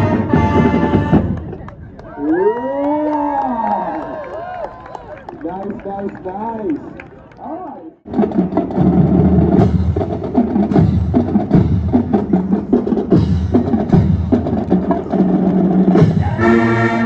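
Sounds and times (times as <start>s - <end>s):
snare and tenor drums: 0.0s - 1.6s, 8.1s - 17.0s
brass sustained chords: 16.3s - 17.0s.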